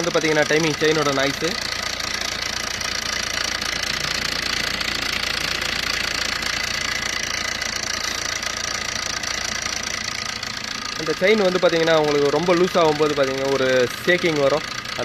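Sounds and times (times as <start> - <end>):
engine idling with knocking rattle: 0.0 - 15.0.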